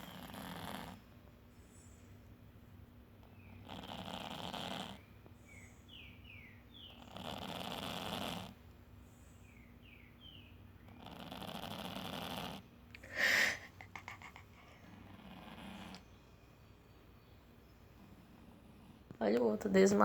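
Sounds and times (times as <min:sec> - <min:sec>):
cat snoring: 0:00.0 - 0:01.0, 0:03.6 - 0:05.0, 0:07.0 - 0:08.6, 0:10.9 - 0:13.4, 0:14.9 - 0:16.0.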